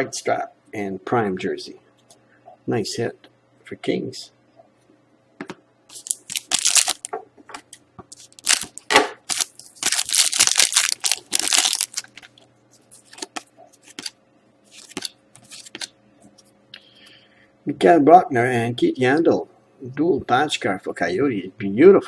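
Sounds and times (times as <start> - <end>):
foil wrapper tearing and crinkling: 5.9 - 7.1, 8.1 - 12.2.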